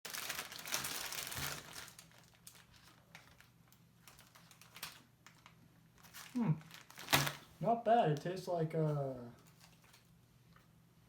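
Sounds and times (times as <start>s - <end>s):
wrapper crinkling: 0.1s - 7.5s, 9.4s - 10.2s.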